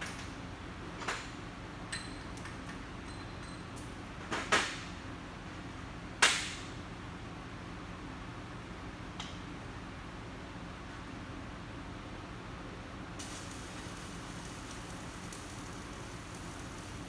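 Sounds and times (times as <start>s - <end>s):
background hum: 13.2s - 17.0s.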